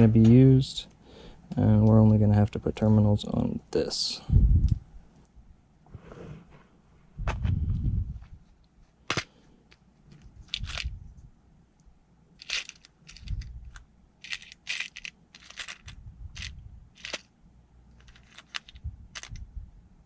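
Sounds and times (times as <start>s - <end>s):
crinkling: 12.4s - 17.3s, 17.9s - 19.4s.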